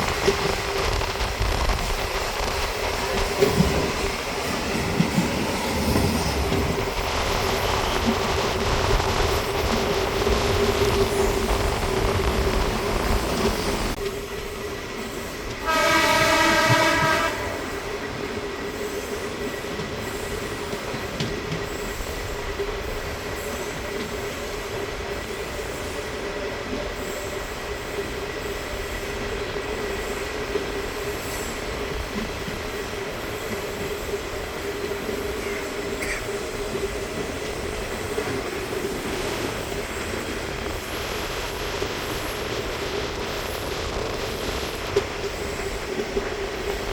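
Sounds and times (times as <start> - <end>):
train running with steady drone: 0.0 - 46.9
train horn: 15.6 - 18.2.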